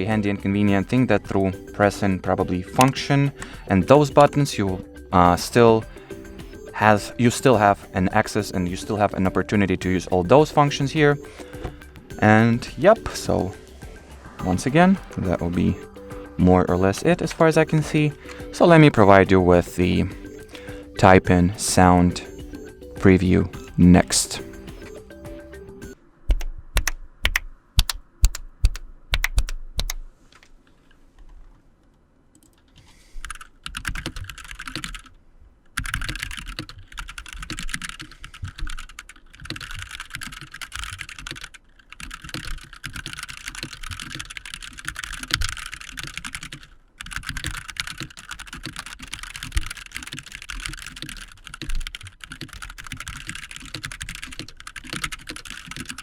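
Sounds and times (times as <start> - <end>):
keyboard typing: 0.7 - 4.6, 9.8 - 13.6, 22.2 - 30.1, 32.3 - 35.1, 35.7 - 56.0.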